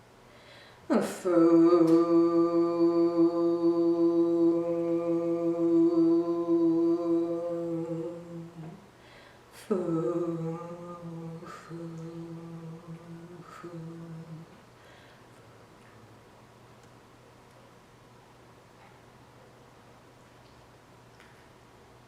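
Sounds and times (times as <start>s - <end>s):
quick breaths: 0.3s - 0.8s, 9.0s - 9.5s
woman humming steady tone: 0.9s - 14.7s.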